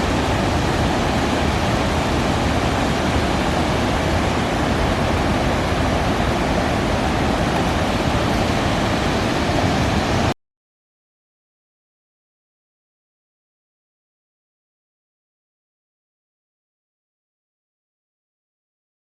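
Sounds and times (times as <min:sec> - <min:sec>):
water rushing down waterfall: 0:00.0 - 0:10.4.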